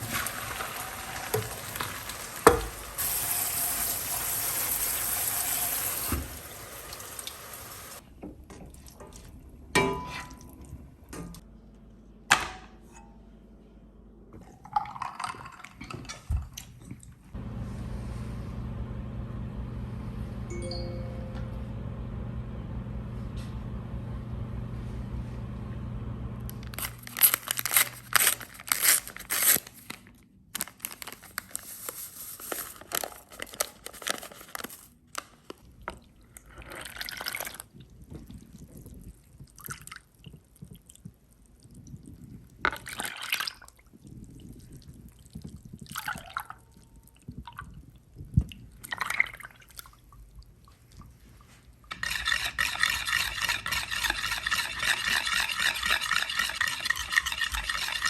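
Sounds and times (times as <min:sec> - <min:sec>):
steady low hum: 0:17.4 - 0:26.8
liquid handling sounds: 0:26.5 - 0:58.0.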